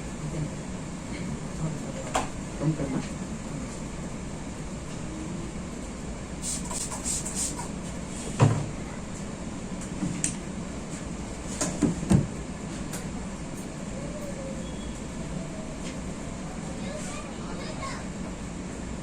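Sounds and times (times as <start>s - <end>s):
steady background hum: 0.0s - 19.0s
hands rubbing through hair: 6.4s - 7.6s.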